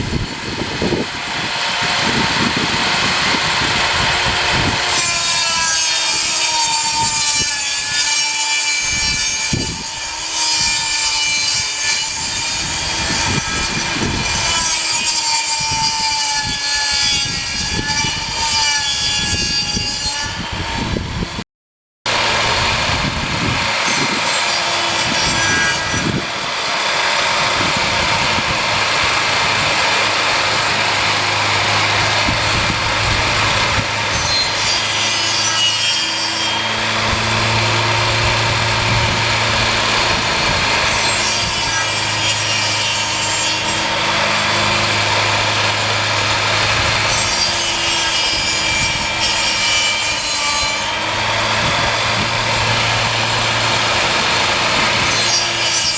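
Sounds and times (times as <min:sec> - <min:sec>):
saw blade rasping wood: 0:00.0 - 0:21.0, 0:22.1 - 0:55.9
saw motor hum: 0:00.0 - 0:21.4, 0:22.1 - 0:55.9.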